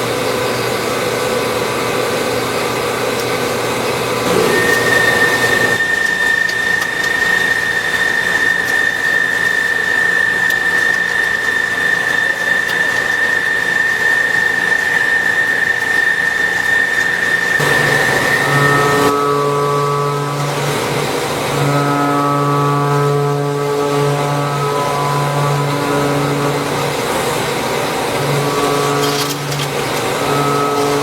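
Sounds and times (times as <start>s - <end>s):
machine cutting metal: 4.2s - 20.4s, 26.0s - 31.0s.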